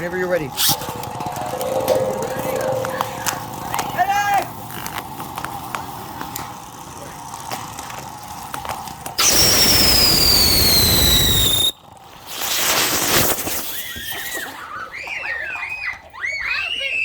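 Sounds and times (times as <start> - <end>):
whistling firework: 9.2 - 11.8.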